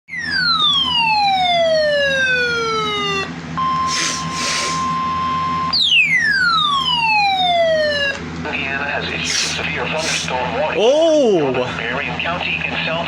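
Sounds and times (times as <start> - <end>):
falling siren-like whistling tone: 0.1 - 8.2
steady single-pitch alarm tone: 0.1 - 8.2
short hiss bursts: 3.9 - 4.8, 9.2 - 10.3.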